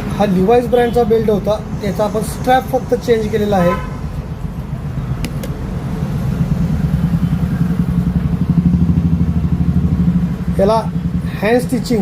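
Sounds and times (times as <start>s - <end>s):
motor vehicle engine running: 4.1s - 12.0s.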